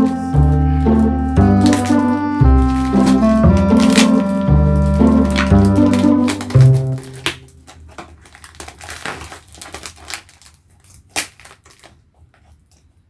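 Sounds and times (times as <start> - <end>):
background music with bass: 0.0 - 7.2
packaging crinkling: 0.0 - 13.0.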